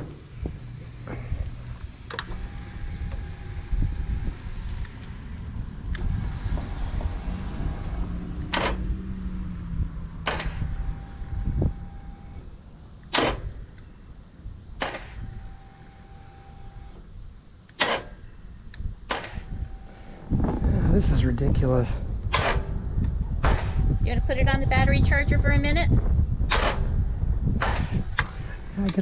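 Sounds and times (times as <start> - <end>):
sharp clicks: 1.4 - 8.8, 10.2 - 13.5, 14.8 - 17.1, 17.7 - 20.4, 27.6 - 29.0.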